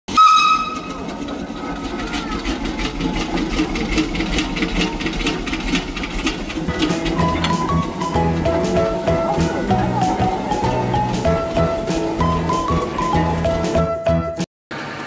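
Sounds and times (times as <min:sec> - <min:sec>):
machine ticking clatter: 0:00.7 - 0:09.8.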